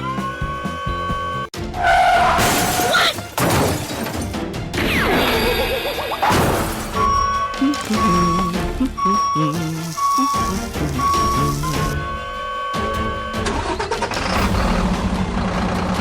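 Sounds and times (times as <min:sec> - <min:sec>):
background music: 0:00.0 - 0:16.0
loud crashing and shattering: 0:02.1 - 0:04.5.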